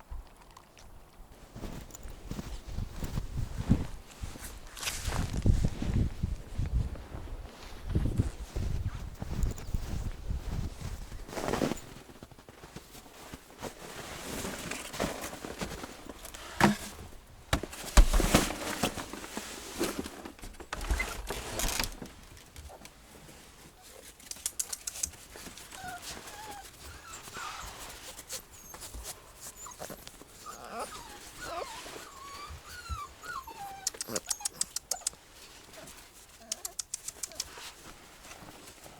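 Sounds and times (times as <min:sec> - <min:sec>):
puppy whimpering: 0:28.6 - 0:35.2, 0:36.4 - 0:37.5.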